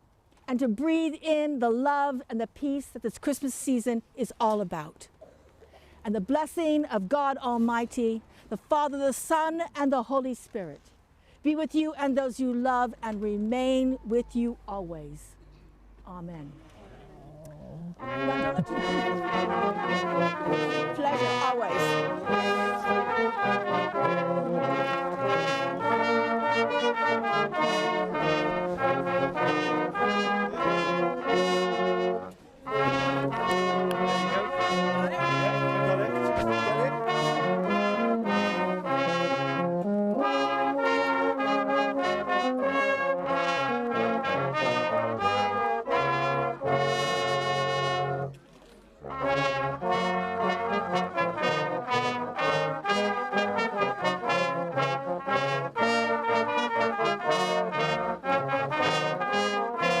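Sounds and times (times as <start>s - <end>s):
brass band playing: 18.0s - 48.4s, 49.0s - 60.0s.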